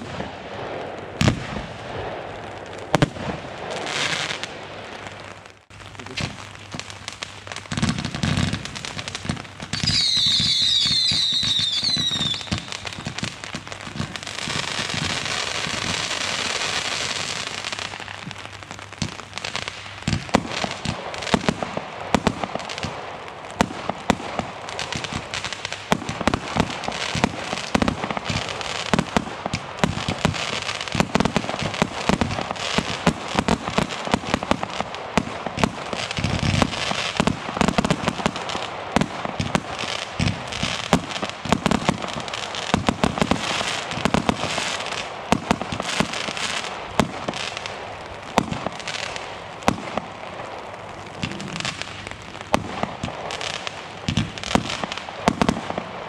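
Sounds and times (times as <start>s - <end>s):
firework hissing: 0.0s - 18.5s
firework crackling and bangs: 0.0s - 56.0s
shrill falling firework whistles: 9.8s - 13.1s.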